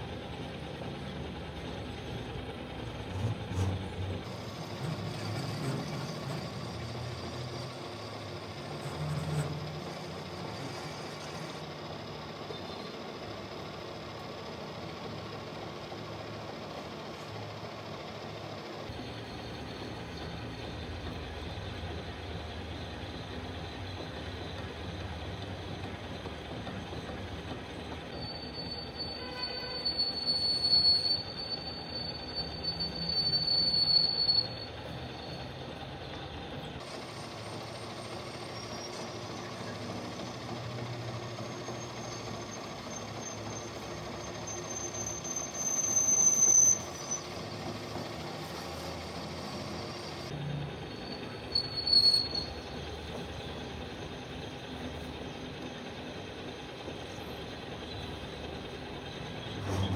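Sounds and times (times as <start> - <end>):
high squeal of cutting tool: 3.5 - 11.9, 28.1 - 35.5, 36.9 - 50.3, 50.9 - 53.2
machine tool humming: 3.6 - 11.9.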